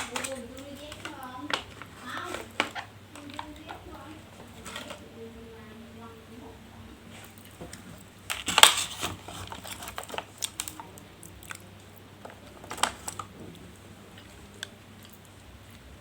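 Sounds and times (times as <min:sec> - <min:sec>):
chewing clicks: 0:09.5 - 0:13.6, 0:14.2 - 0:15.8.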